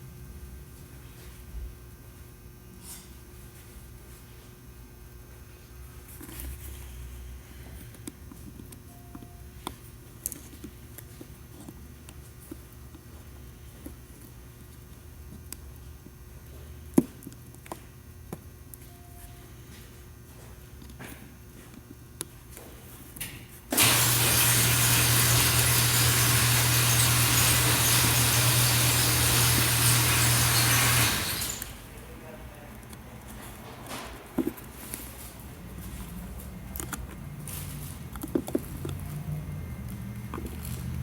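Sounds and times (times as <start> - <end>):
electric blower motor running: 23.7 - 32.0.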